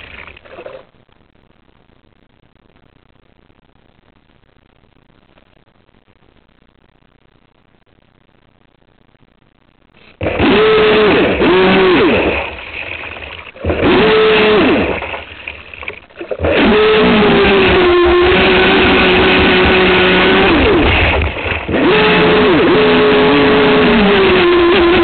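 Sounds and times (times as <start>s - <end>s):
water and hull noise: 0.0s - 1.3s, 10.0s - 25.0s
electric motor whining: 10.2s - 12.3s, 13.6s - 15.0s, 16.4s - 25.0s.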